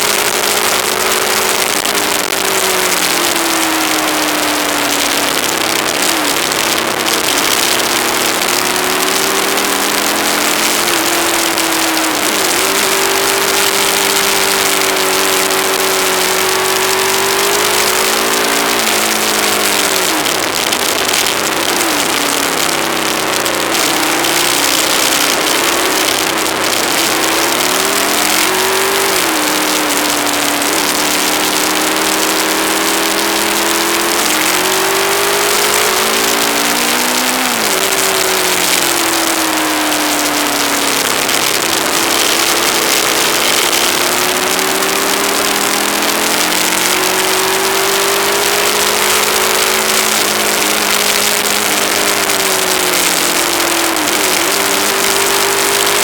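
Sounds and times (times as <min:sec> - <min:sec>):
motorcycle engine running: 0:00.0 - 0:56.0.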